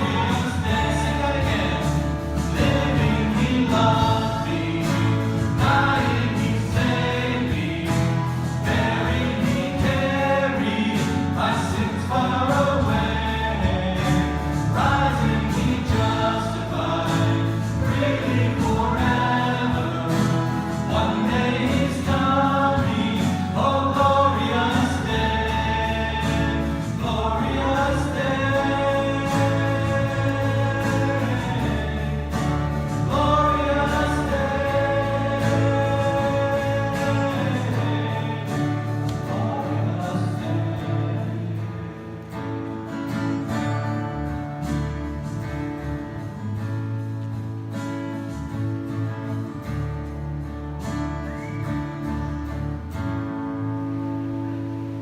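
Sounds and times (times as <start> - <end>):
group singing worship song: 0.0 - 41.8
instrumental accompaniment: 0.0 - 55.0.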